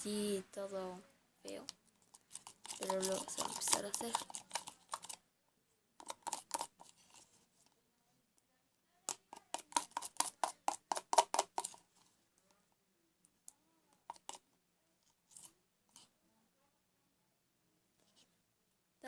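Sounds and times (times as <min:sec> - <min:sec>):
spoon clicking against container: 0:02.4 - 0:05.2.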